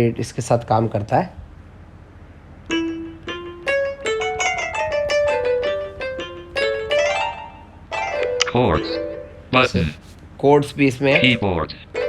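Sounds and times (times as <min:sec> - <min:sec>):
keyboard instrument notes: 0:02.7 - 0:10.0, 0:11.1 - 0:12.0.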